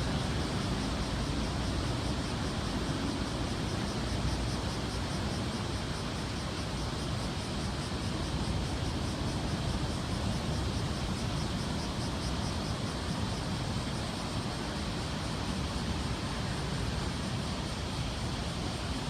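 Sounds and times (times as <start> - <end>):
heavy ocean surf roaring: 0.0 - 6.6.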